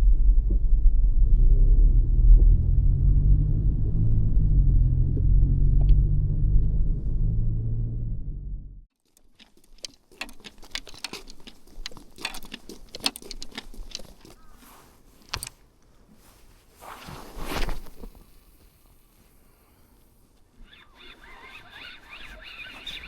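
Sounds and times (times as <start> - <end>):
fishing tackle clicking: 9.1 - 14.5.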